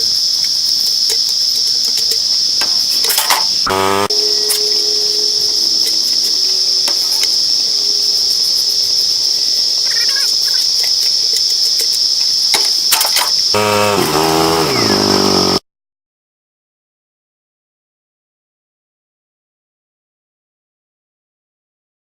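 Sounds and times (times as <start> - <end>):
cicadas chorus: 0.0 - 15.6
low falling pitch sound: 3.7 - 9.8.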